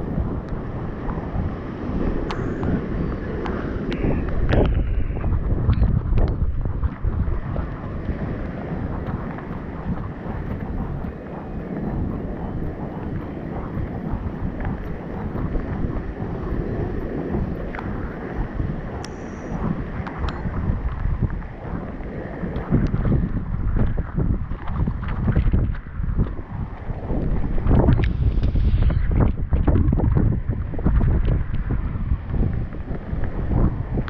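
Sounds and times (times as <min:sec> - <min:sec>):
wind buffeting microphone: 0:00.0 - 0:34.0
faint sharp ticks: 0:02.2 - 0:04.9, 0:19.0 - 0:20.5.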